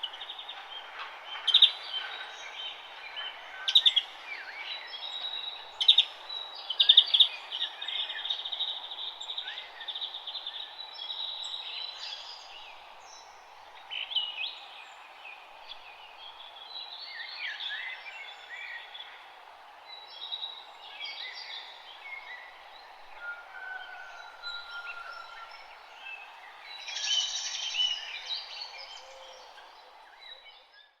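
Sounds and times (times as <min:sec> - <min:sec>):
songbirds chirping and singing: 0:00.0 - 0:31.0
steady background hiss: 0:24.1 - 0:30.6.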